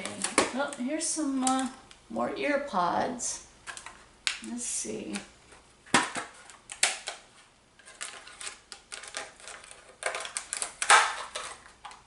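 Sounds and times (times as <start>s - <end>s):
packaging clicks and rustles: 5.5s - 12.0s.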